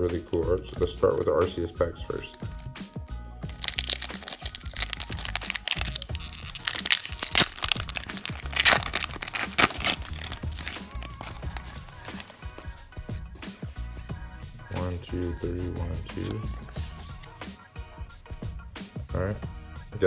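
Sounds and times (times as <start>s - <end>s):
background music: 0.0s - 20.0s
foil wrapper crinkling: 3.4s - 12.4s.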